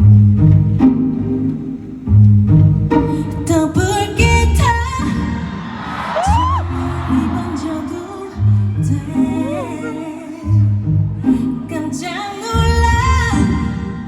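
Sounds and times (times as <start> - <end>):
person singing: 3.0 - 14.0
audience cheering: 5.1 - 10.0
whoop from audience: 5.8 - 7.8.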